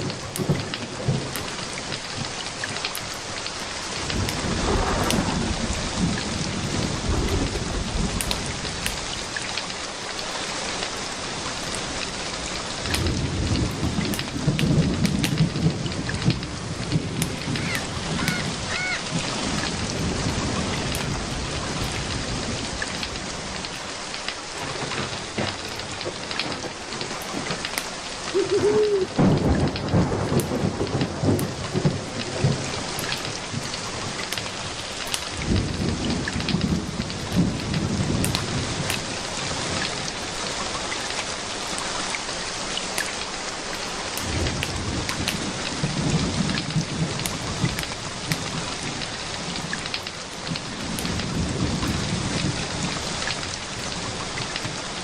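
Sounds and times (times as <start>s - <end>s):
wood fire crackling: 0.0s - 41.9s, 42.5s - 55.0s
steady rain: 0.0s - 55.0s
thunder rolling: 3.9s - 9.3s, 12.1s - 23.7s, 24.6s - 40.2s, 44.2s - 54.8s.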